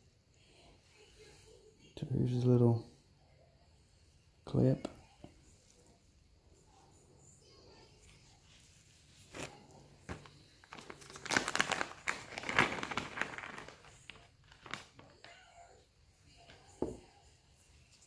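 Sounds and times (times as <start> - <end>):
plastic crinkling: 8.1 - 15.8.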